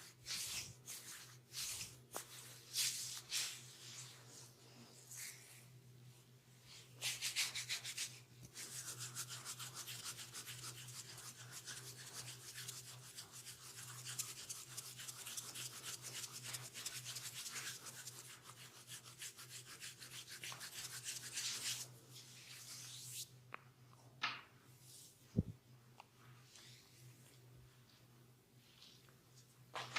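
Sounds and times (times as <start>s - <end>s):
hands scratching scalp: 7.0s - 21.9s.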